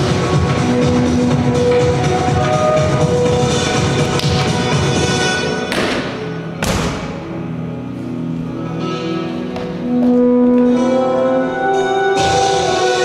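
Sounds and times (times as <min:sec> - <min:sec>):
held musical notes: 0:07.2 - 0:13.0.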